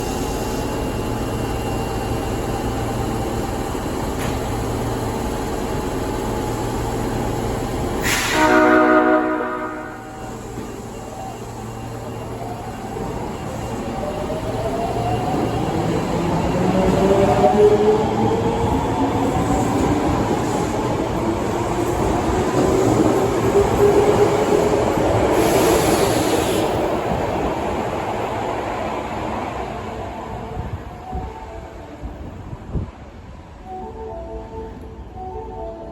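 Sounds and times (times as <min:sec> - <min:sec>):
subway train humming: 0:00.0 - 0:35.9
air hiss: 0:08.0 - 0:08.5
train air horn chord: 0:08.0 - 0:10.3.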